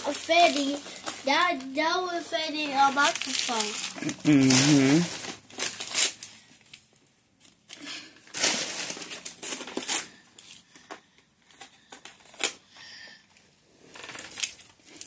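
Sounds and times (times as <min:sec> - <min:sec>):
packaging crinkling and rustling: 0:00.1 - 0:01.8, 0:02.6 - 0:12.7, 0:13.9 - 0:15.0.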